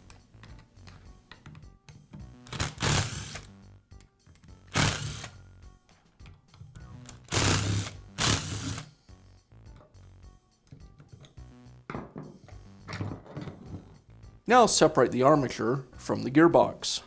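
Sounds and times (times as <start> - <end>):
background music: 0.0 - 17.0
electric screwdriver whirring: 2.5 - 3.5, 4.7 - 5.4, 7.1 - 8.9.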